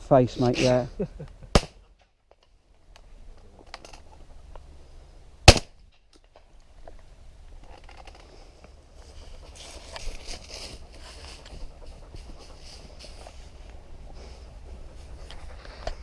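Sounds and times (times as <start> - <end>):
loud shotgun shot: 1.5 - 1.8, 5.4 - 5.8.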